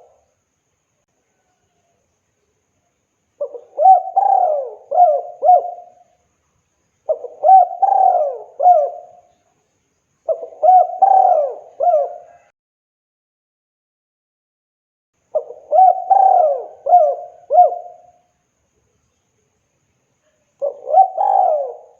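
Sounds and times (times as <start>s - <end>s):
dove cooing: 3.4s - 6.0s, 7.1s - 9.3s, 10.3s - 12.5s, 15.4s - 18.2s, 20.6s - 21.9s.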